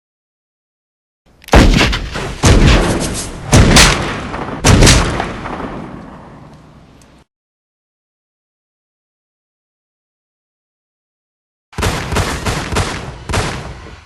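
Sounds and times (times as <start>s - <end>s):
echoing gunshots: 1.5s - 7.0s, 11.8s - 14.0s.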